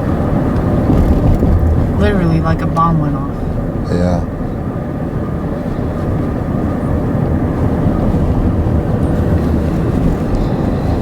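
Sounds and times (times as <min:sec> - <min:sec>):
vehicle engine and road noise: 0:00.0 - 0:11.0.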